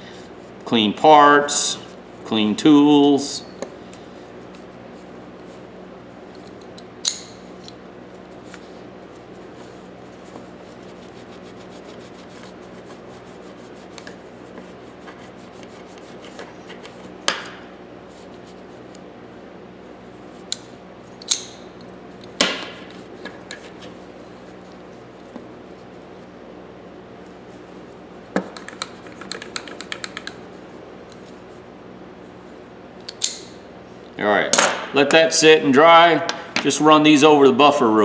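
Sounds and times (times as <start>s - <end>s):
steady background hum: 0.0s - 38.0s
rubbing pliers: 28.4s - 30.4s.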